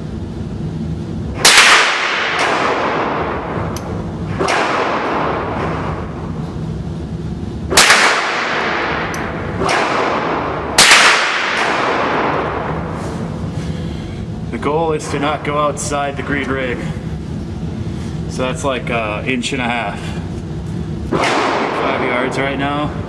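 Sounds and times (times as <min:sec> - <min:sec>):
softer gunshots: 0:01.4 - 0:03.5, 0:04.3 - 0:05.6, 0:07.7 - 0:12.8, 0:21.1 - 0:22.0
rifle shots echoing: 0:01.4 - 0:03.7, 0:04.3 - 0:05.6, 0:07.7 - 0:12.9, 0:21.1 - 0:22.2.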